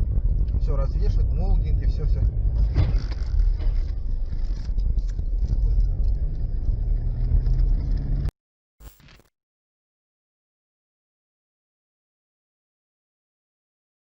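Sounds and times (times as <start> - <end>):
rattling in car: 0.0 - 8.3
car engine and road rumble: 0.0 - 9.2.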